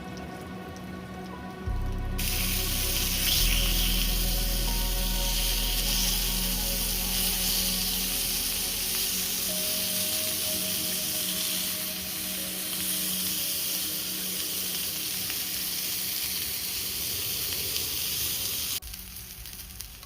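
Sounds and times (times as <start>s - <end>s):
low rumble: 0.0s - 12.8s
soft background music: 0.0s - 17.8s
meat sizzling on a grill: 2.2s - 20.0s.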